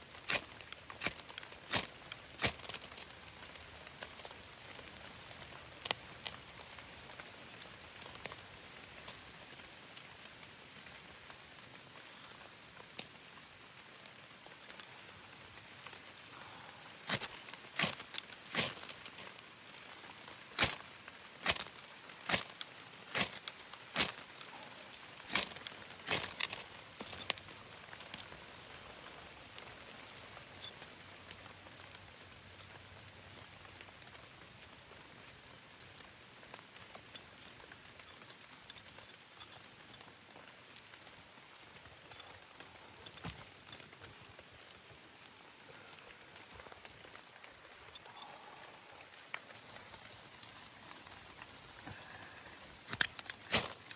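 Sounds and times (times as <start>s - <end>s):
rain patter: 0.0s - 53.9s.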